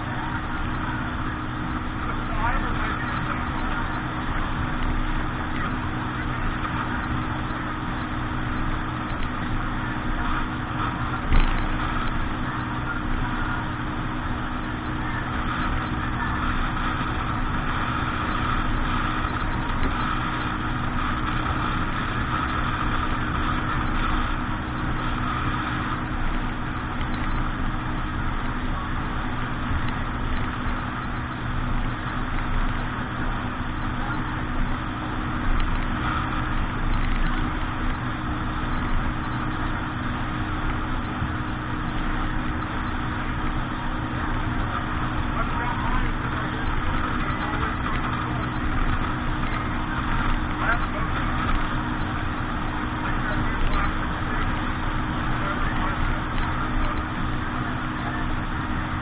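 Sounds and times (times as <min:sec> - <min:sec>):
motorboat engine running: 0:00.0 - 0:59.0.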